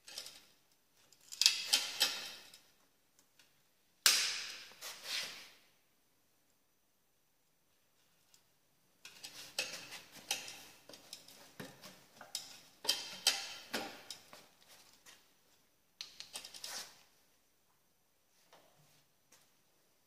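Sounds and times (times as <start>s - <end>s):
metal tools clinking: 9.1s - 11.5s, 12.2s - 14.4s.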